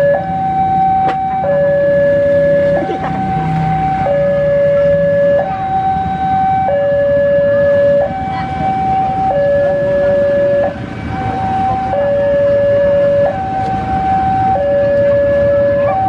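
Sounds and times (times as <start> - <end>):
two-tone siren: 0.0 - 16.0.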